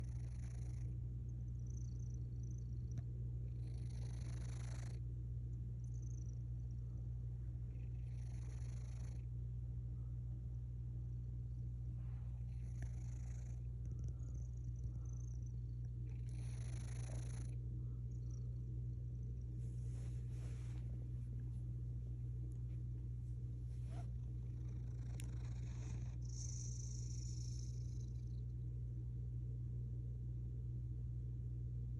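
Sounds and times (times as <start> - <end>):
cat snoring: 0.0 - 0.9, 1.5 - 5.0, 7.7 - 9.3, 12.0 - 18.4, 23.7 - 28.4
soft hiss: 17.4 - 28.2.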